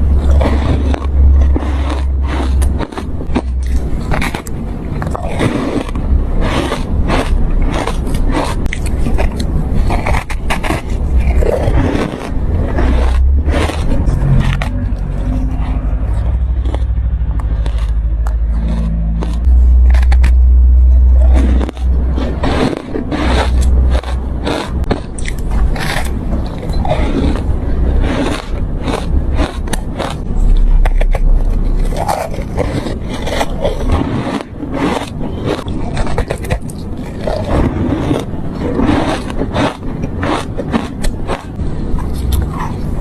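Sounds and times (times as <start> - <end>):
ice crunching: 0.0 - 43.0
steady low rumble: 0.0 - 43.0.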